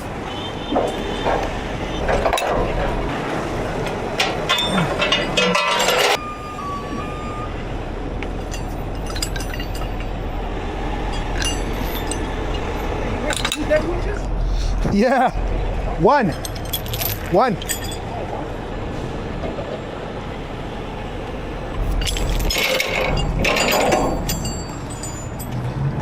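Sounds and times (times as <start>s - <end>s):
heavy truck engine running: 0.0s - 16.0s
metal hardware clinking and rattling: 2.0s - 3.0s, 4.2s - 6.2s, 8.4s - 10.3s, 11.1s - 14.1s, 16.1s - 18.1s, 21.8s - 25.7s.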